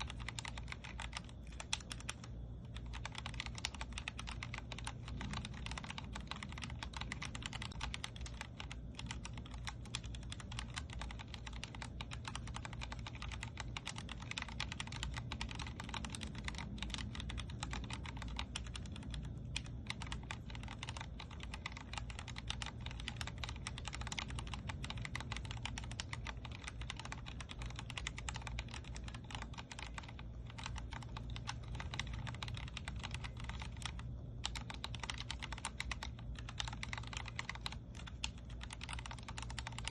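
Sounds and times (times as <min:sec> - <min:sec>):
fast typing on mechanical keyboard: 0:00.0 - 0:39.9
steady low hum: 0:00.0 - 0:39.9.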